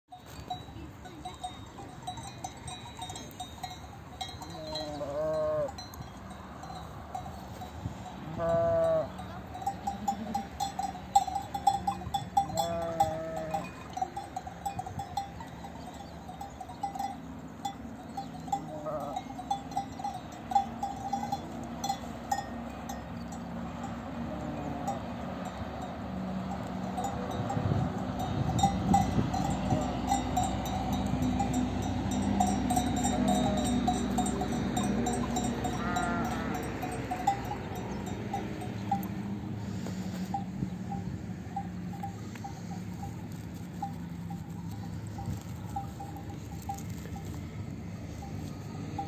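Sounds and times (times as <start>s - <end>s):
livestock neck bells clinking: 0.1s - 49.0s
sheep bleating: 8.2s - 9.2s.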